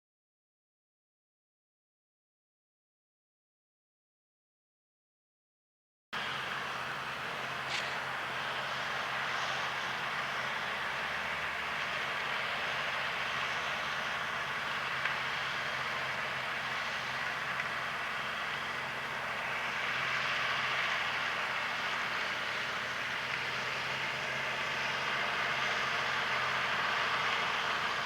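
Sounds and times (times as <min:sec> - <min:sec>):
rush of harvesting machinery: 0:06.2 - 0:28.0
tractor engine running: 0:06.2 - 0:28.0.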